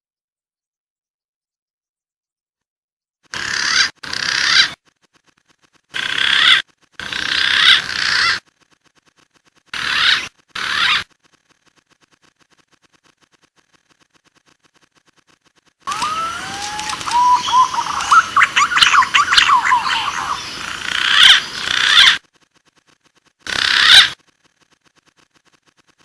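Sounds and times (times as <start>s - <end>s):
pigeon whistled calls: 15.9s - 20.5s.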